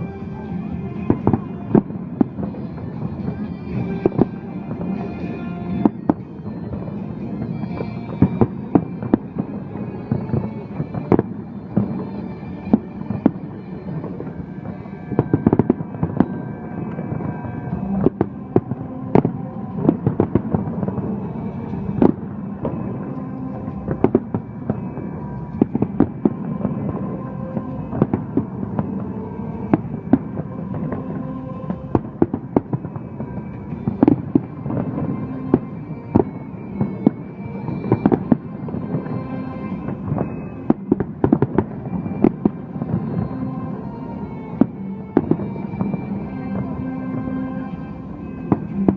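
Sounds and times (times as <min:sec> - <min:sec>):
fireworks bangs and crackles: 0:00.0 - 0:48.9.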